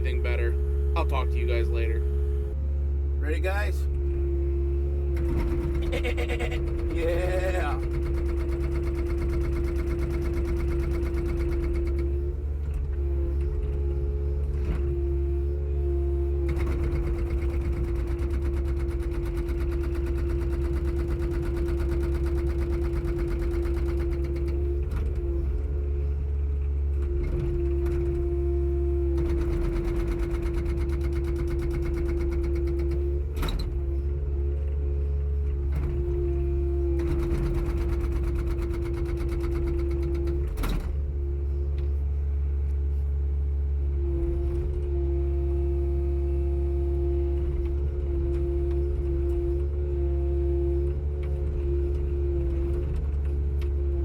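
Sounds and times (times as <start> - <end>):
excavator engine drone: 0.0 - 54.0
hydraulic breaker hammering: 5.2 - 12.2, 36.9 - 40.6.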